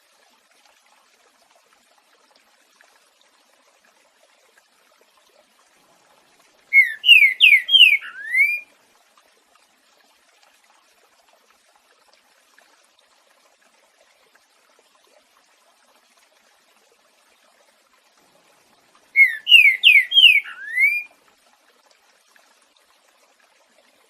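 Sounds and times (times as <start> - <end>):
trickle of running water: 0.0 - 24.0
bird singing slurred whistles: 6.7 - 8.6, 19.2 - 21.1.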